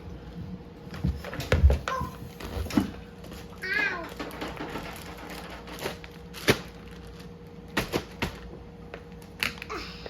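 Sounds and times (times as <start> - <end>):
objects knocking and clicking: 3.8 - 6.0.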